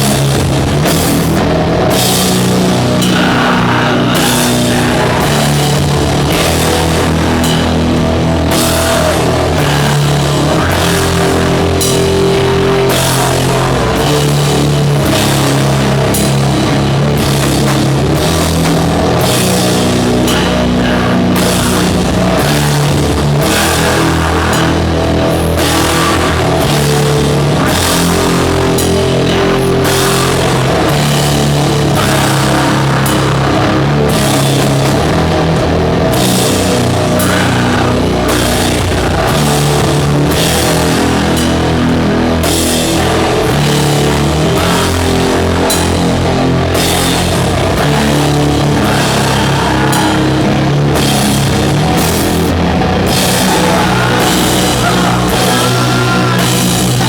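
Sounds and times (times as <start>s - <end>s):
doom metal band playing: 0.0s - 57.0s.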